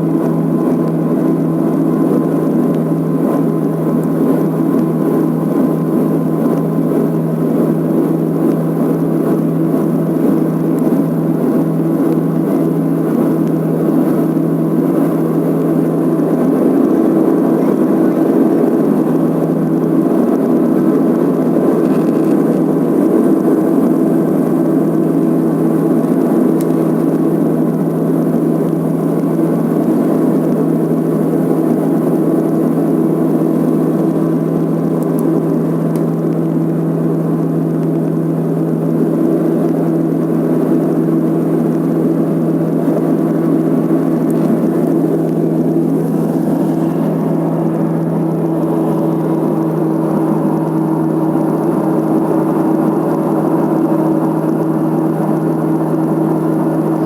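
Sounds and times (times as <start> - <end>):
turboprop engines droning: 0.0 - 57.0.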